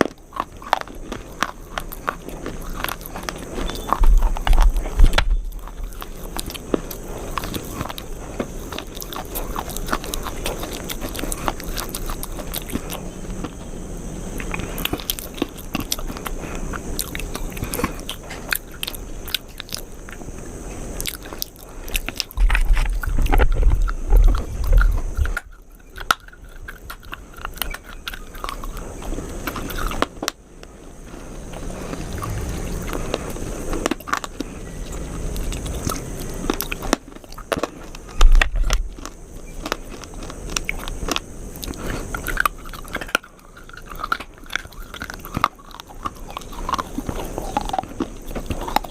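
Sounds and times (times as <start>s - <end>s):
person chewing and crunching food: 0.0s - 48.9s
heavy low thuds: 22.4s - 25.5s.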